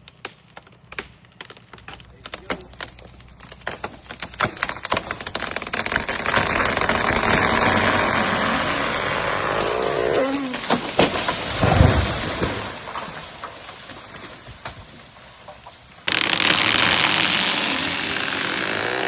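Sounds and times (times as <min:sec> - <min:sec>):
tree trunk cracking and snapping: 0:00.0 - 0:19.0
chainsaw idling: 0:16.1 - 0:19.0.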